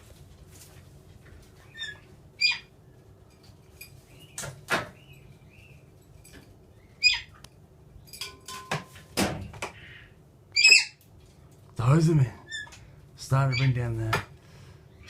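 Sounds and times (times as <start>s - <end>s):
birds giving harsh calls: 1.6s - 2.8s, 6.7s - 7.4s, 9.7s - 11.0s, 12.3s - 13.9s.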